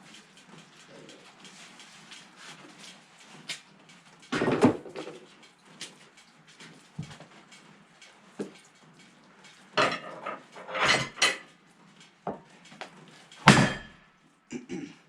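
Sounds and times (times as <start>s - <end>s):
wooden boards clattering: 4.3s - 5.3s.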